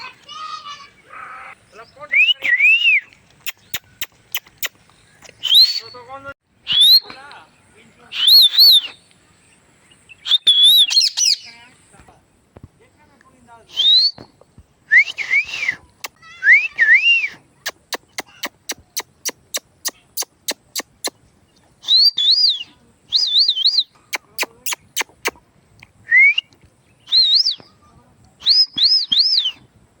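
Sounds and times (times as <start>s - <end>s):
sharp clicks: 3.1s - 5.7s.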